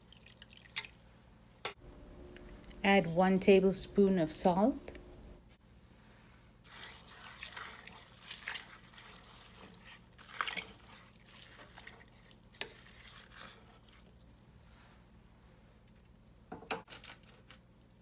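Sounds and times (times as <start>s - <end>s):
water sloshing in a pot: 0.0s - 1.3s, 6.6s - 17.6s.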